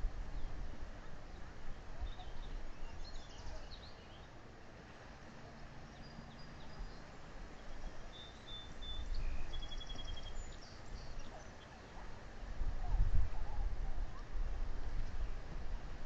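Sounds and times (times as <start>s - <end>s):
wind on microphone: 0.0s - 3.7s, 8.9s - 16.0s
faint high bird chirps: 2.0s - 4.3s, 5.9s - 12.1s.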